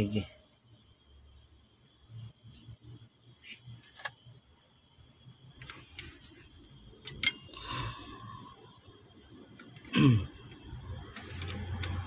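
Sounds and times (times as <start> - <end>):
metal parts clicking: 7.0 - 7.5, 9.5 - 12.0.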